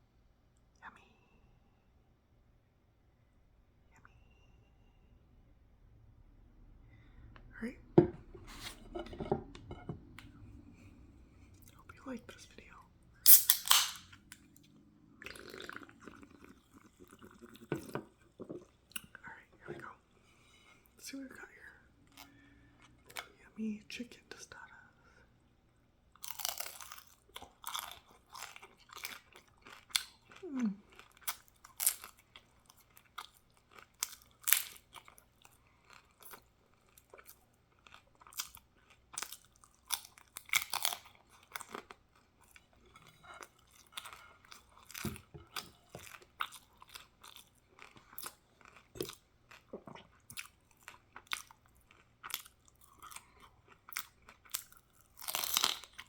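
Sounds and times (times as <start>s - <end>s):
person chewing crispy food: 13.3s - 18.3s, 26.2s - 56.0s.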